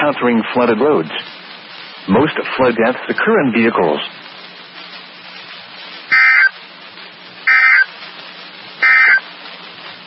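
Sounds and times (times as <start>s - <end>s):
radio hiss: 0.0s - 10.0s
buzzing digital tone bursts: 6.1s - 6.5s, 7.4s - 7.9s, 8.8s - 9.2s.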